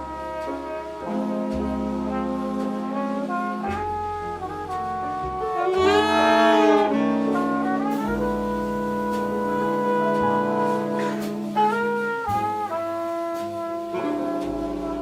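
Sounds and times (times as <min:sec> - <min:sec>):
bass notes: 0:00.0 - 0:15.0
jazz horn section chords: 0:00.0 - 0:15.0.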